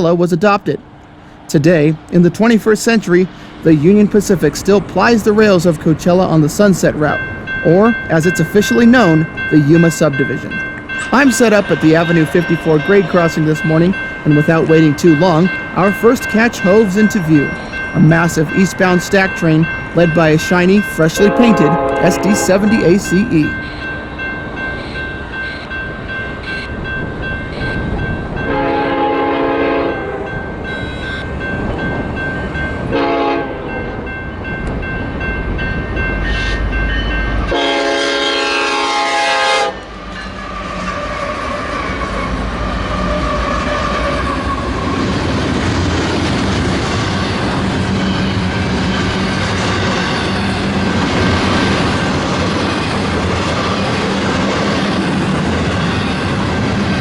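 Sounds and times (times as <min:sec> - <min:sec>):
freight cars rumbling: 0:00.0 - 0:57.0
locomotive passing: 0:00.0 - 0:57.0
train horn blasts: 0:21.2 - 0:23.1, 0:28.5 - 0:31.2, 0:32.9 - 0:33.7, 0:37.5 - 0:44.6.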